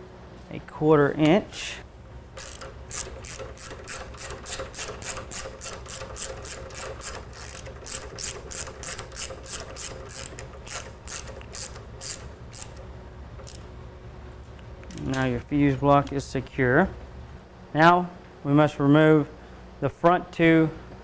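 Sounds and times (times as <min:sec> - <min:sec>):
ratchet wrench clicking: 0:02.4 - 0:12.8.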